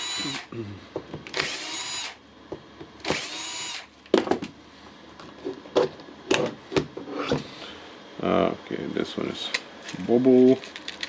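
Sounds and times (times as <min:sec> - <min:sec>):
impact wrench motor whining: 0:00.0 - 0:00.5, 0:01.3 - 0:02.2, 0:03.0 - 0:03.9.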